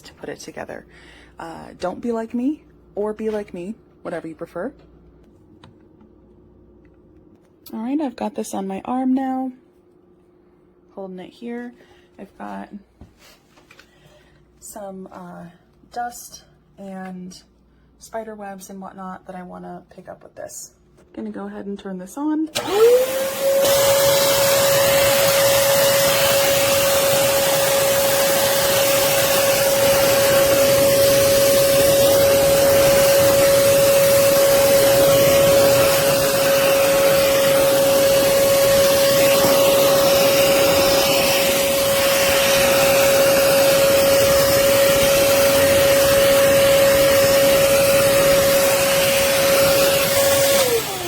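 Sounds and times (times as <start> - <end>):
vacuum cleaner running: 22.5 - 51.0
vacuum motor winding down: 22.5 - 51.0.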